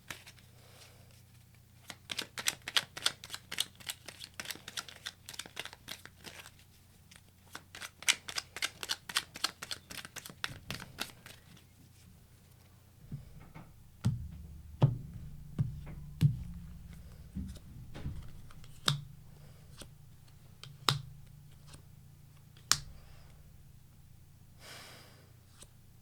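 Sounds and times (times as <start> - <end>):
cards tapping on a table: 13.1 - 19.9, 20.6 - 21.8.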